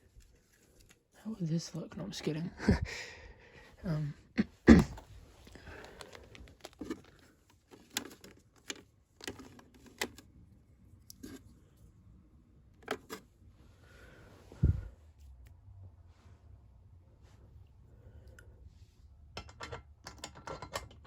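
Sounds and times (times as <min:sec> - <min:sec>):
packaging clicks and taps: 0:04.9 - 0:10.2
packaging rustling: 0:04.9 - 0:10.2.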